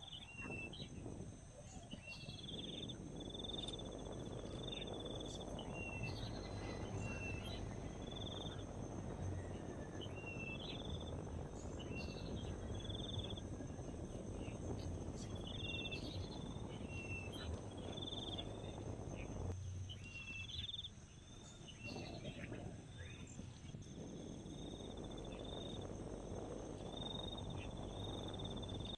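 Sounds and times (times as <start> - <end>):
insects droning: 0.0 - 28.9
low steady rumble: 0.0 - 28.9
bird chirping and trilling: 1.6 - 23.4.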